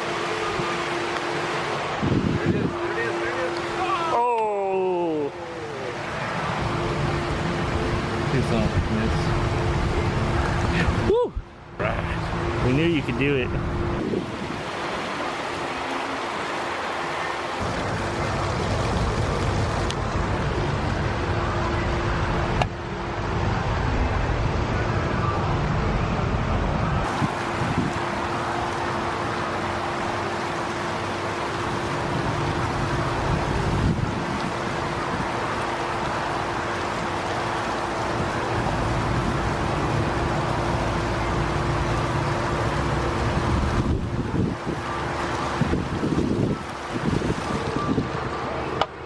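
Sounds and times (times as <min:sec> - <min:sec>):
wind buffeting microphone: 0:01.9 - 0:02.8, 0:13.2 - 0:15.0, 0:23.4 - 0:28.4, 0:32.0 - 0:35.5, 0:43.1 - 0:48.3.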